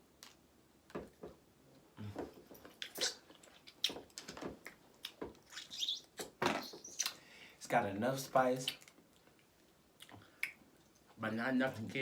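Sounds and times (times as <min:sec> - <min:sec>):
chewing and lip smacks: 0:02.6 - 0:07.2, 0:08.6 - 0:11.1.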